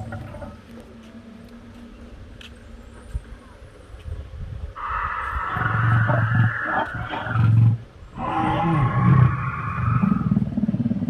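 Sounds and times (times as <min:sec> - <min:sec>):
dinosaur roar over loudspeakers: 0:04.8 - 0:11.0.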